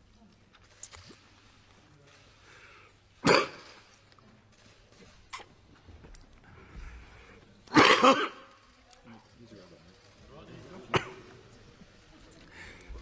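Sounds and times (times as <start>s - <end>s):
man coughing: 3.2s - 3.8s, 7.7s - 8.5s, 10.9s - 11.3s.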